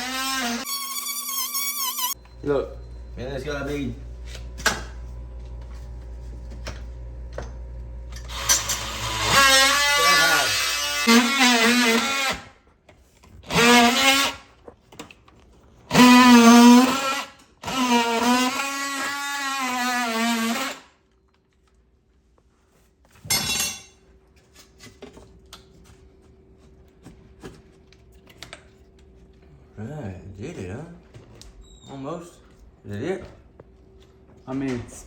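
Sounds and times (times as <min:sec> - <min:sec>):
power tool motor cutting: 0:00.0 - 0:02.2, 0:08.1 - 0:12.5, 0:13.5 - 0:14.4, 0:15.9 - 0:20.8
low hum: 0:02.2 - 0:08.3.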